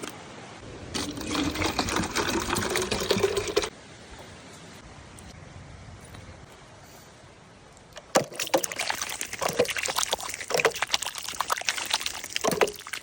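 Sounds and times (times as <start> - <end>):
water splashing and pouring: 0.8 - 3.7, 8.1 - 13.0.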